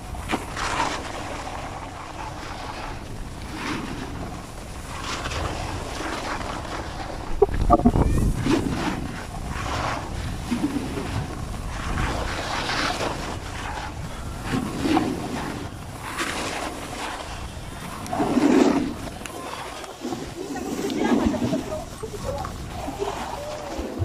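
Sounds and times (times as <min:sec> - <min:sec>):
wind on microphone: 0:01.2 - 0:24.0
snowboard scraping over snow: 0:08.6 - 0:24.0.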